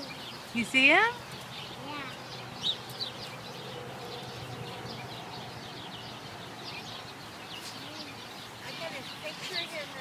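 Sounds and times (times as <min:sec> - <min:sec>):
small birds chirping: 0:00.0 - 0:10.0.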